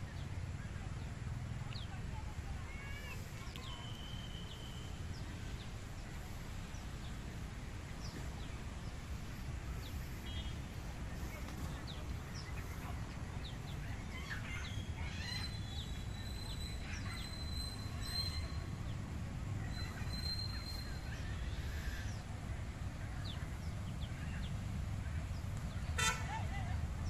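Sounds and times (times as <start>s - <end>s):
birds chirping: 0.0s - 27.0s
thin high whistle: 3.7s - 5.0s.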